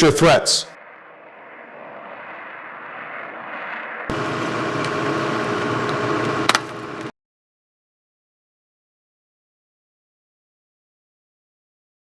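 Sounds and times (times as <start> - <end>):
jet engine rushing with whine: 0.0 - 7.1.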